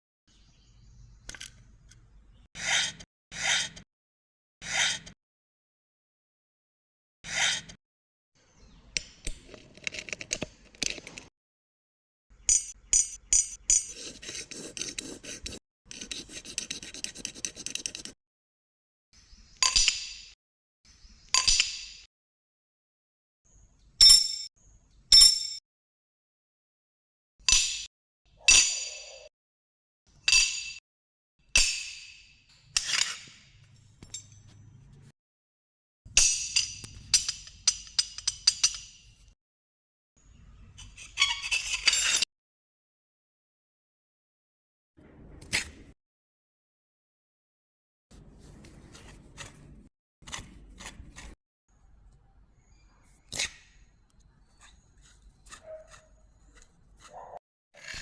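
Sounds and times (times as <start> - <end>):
scraping on metal parts: 32.6 - 35.1.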